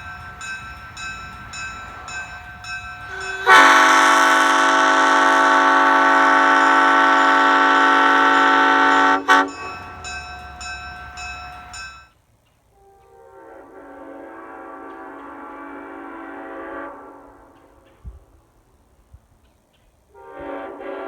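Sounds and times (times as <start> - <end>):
train horn chord: 3.0 - 10.2, 12.7 - 18.4, 20.1 - 21.0.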